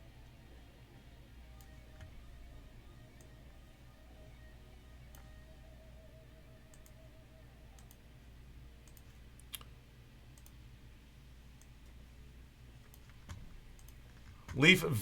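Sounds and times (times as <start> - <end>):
quiet room hum: 0.0 - 15.0
faint clicks: 5.1 - 5.4, 6.7 - 7.0, 7.7 - 8.0, 8.8 - 9.7, 10.3 - 10.6, 12.8 - 14.6.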